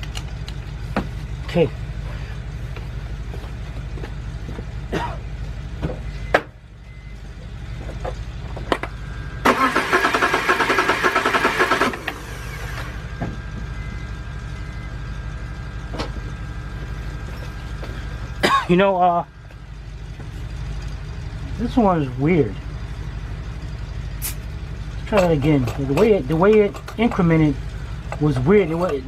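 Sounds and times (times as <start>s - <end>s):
engine cranking without starting: 9.4s - 13.0s.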